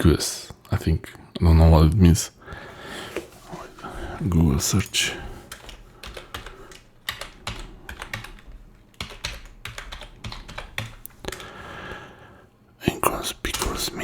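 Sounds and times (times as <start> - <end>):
computer keyboard typing: 4.8 - 11.6, 13.4 - 14.0.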